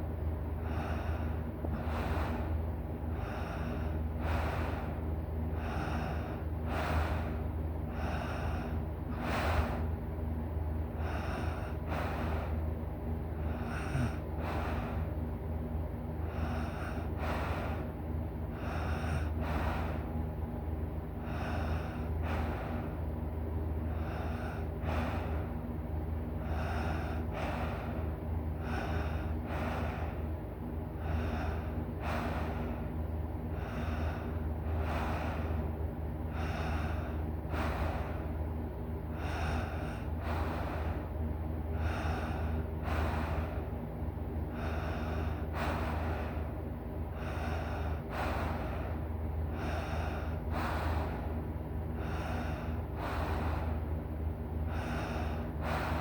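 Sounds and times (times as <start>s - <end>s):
low hum: 0.0s - 56.0s
person snoring heavily: 13.5s - 14.8s.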